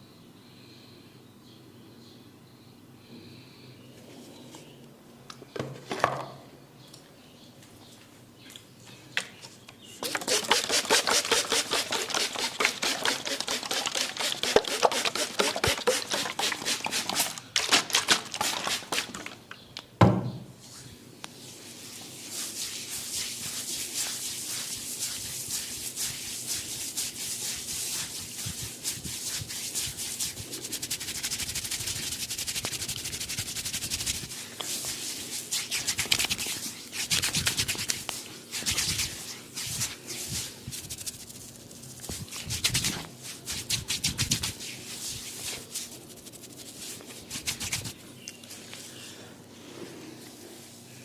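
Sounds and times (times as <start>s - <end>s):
hair and scalp being scratched: 10.0s - 19.3s, 21.6s - 48.0s.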